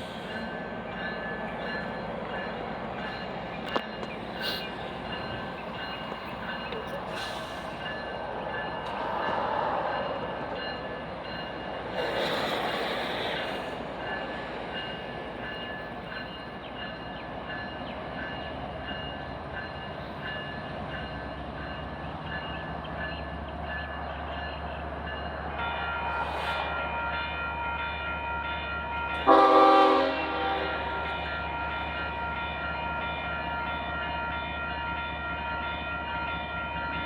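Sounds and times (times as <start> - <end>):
diesel locomotive rumble: 0.0 - 25.6
freight train rolling on rails: 0.0 - 37.0.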